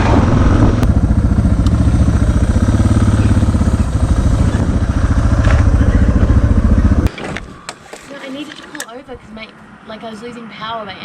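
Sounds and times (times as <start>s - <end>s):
vehicle engine running: 0.0s - 7.1s.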